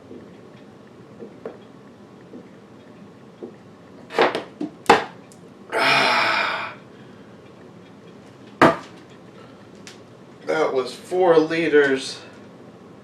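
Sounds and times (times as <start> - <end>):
breathy rush of air: 5.7 - 7.4.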